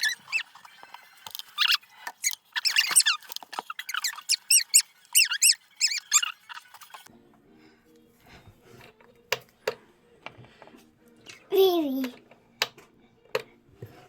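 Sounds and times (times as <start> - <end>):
small pet squeaking: 0.0 - 0.6, 1.4 - 7.1.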